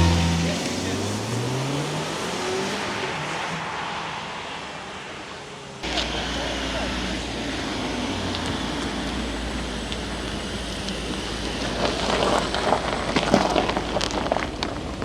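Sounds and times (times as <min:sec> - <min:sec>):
exhaust crackling: 0:00.0 - 0:02.6, 0:05.8 - 0:15.0
car engine humming: 0:00.0 - 0:02.8, 0:05.8 - 0:15.0.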